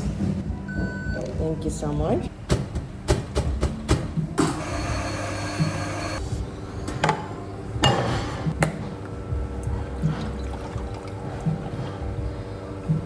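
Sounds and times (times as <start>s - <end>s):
coffee machine hum: 4.3s - 7.0s
coffee machine hiss: 4.4s - 6.3s.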